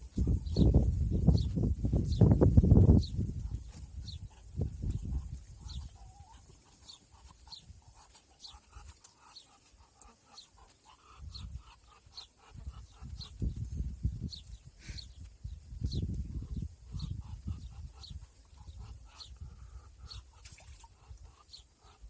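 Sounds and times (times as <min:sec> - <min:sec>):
bird chirping: 0:03.0 - 0:19.4.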